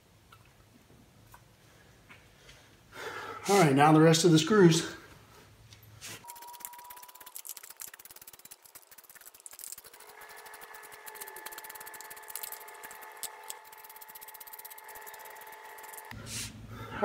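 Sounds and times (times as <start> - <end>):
rapid clicking: 6.2 - 16.1
electric screwdriver motor whining: 9.9 - 16.1.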